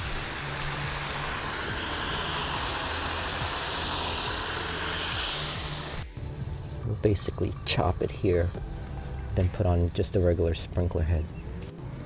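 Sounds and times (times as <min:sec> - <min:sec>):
water spraying from leaking pipe: 0:00.0 - 0:07.3.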